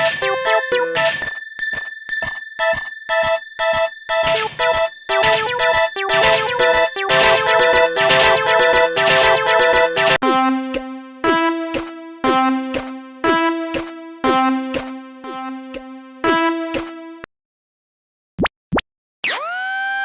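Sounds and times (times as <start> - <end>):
electronic music: 0.0 - 1.3, 2.6 - 17.3.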